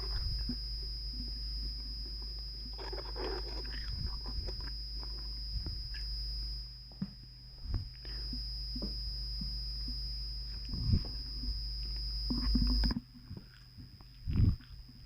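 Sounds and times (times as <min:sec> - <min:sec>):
high electrical whine and hum: 0:00.0 - 0:15.0
chewing and mouth clicks: 0:02.7 - 0:06.1, 0:12.4 - 0:15.0.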